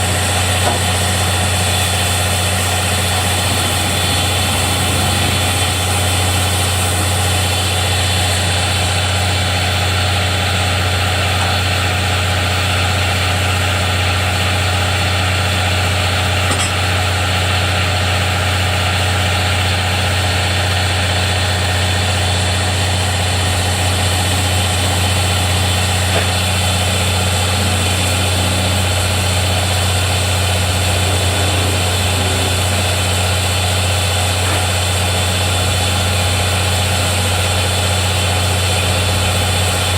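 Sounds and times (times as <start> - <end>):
engine idling with low drone: 0.0 - 39.9.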